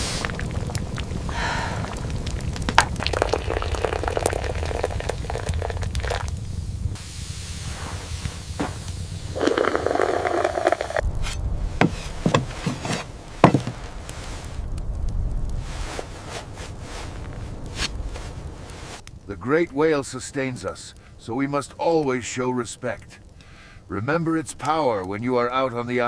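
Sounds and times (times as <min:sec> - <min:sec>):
steady low rumble: 0:00.0 - 0:21.3
scraping and knocking: 0:09.4 - 0:13.9.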